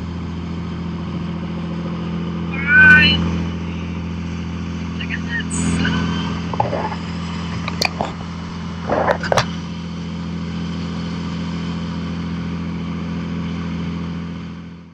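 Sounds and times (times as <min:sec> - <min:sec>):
boat engine droning: 0:00.0 - 0:14.9
knocks and clatters: 0:06.5 - 0:09.6.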